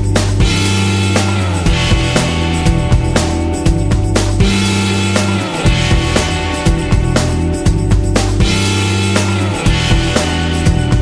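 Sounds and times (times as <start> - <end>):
rock backing track: 0.0 - 11.0.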